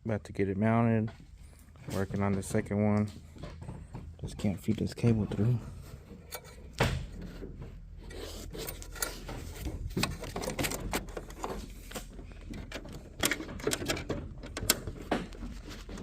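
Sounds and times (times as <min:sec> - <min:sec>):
clicks and knocks: 0:08.4 - 0:16.0.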